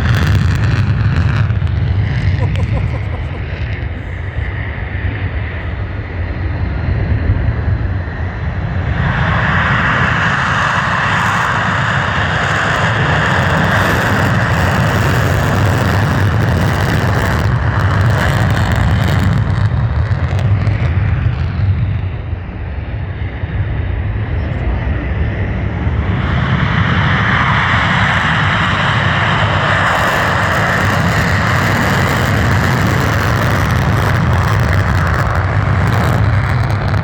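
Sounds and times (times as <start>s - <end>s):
jet engine roaring: 0.0s - 37.0s.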